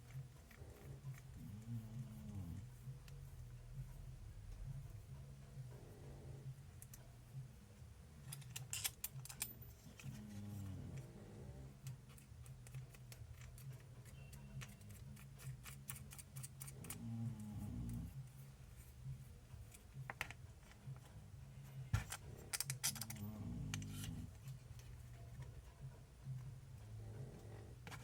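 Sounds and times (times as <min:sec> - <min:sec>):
steady low hum: 0:00.0 - 0:28.0
small parts clicking and tapping: 0:08.2 - 0:11.1, 0:11.8 - 0:18.4, 0:19.7 - 0:21.2, 0:21.9 - 0:25.7.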